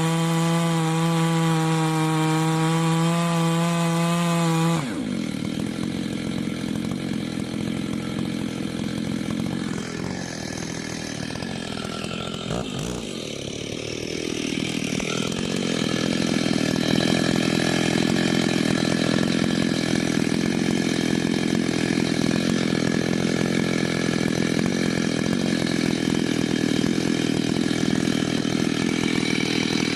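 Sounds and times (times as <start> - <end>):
chainsaw running hard: 0.0 - 29.9.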